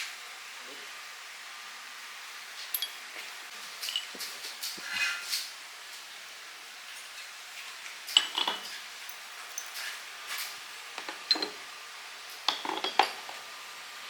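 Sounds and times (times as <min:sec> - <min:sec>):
metal parts clinking: 0:03.8 - 0:04.2, 0:08.1 - 0:08.7, 0:12.5 - 0:13.3.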